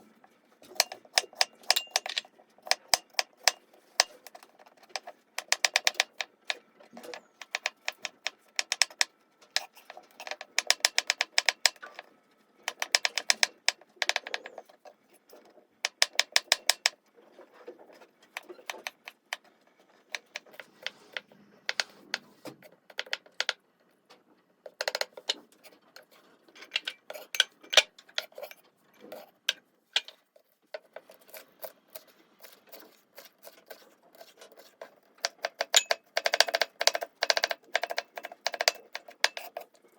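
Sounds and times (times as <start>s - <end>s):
kitchen utensil clicking rapidly: 33.2s - 39.6s.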